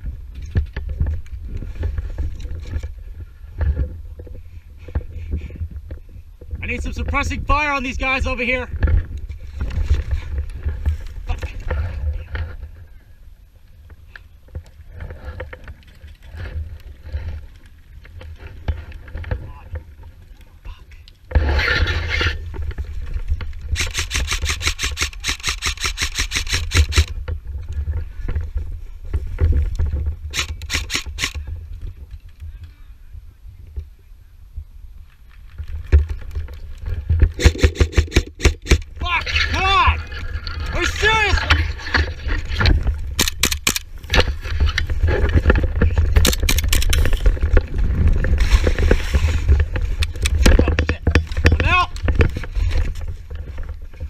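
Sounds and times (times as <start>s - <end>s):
airsoft rifle firing full auto: 23.8s - 27.1s.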